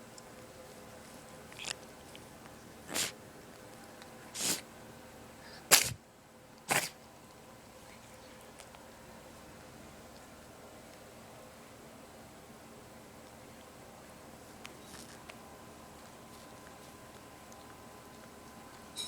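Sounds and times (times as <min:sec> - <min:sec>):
cat sneezing: 0:02.8 - 0:03.2, 0:04.3 - 0:04.7, 0:05.5 - 0:06.0, 0:06.7 - 0:07.0.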